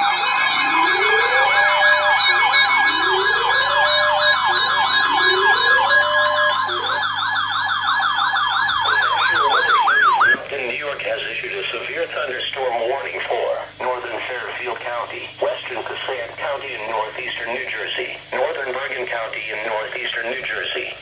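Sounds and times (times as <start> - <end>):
electronic siren wail: 0.0 - 10.5
electronic siren yelp: 0.0 - 10.5
high warble tone: 0.0 - 10.5.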